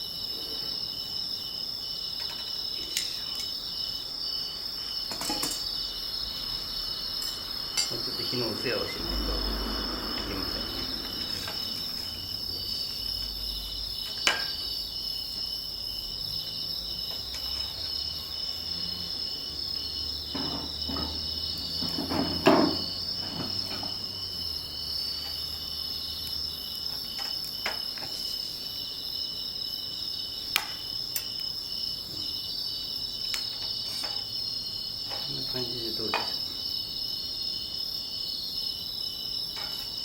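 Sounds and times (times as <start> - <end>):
insects trilling: 0.0 - 40.0
firewood and tools knocking: 20.3 - 24.0, 36.0 - 36.4.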